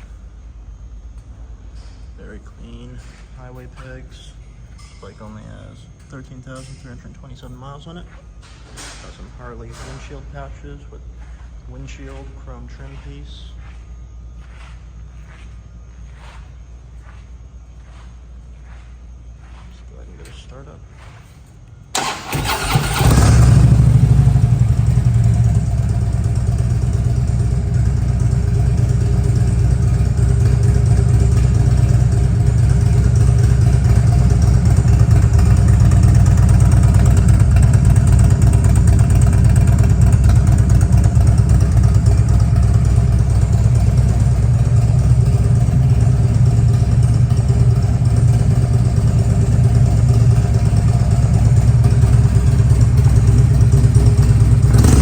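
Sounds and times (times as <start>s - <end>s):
motorcycle engine idling: 21.9s - 55.0s.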